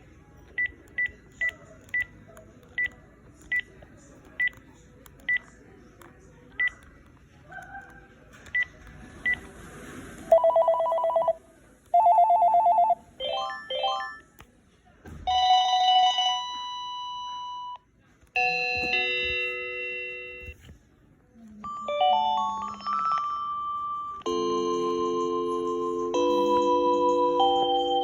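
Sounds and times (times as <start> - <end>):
warbling two-tone ringtone: 24.3 - 28.0.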